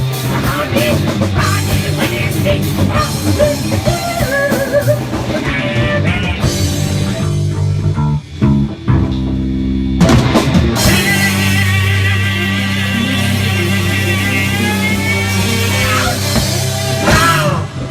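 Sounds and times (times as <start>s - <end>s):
rock music from a jukebox: 0.0s - 17.9s.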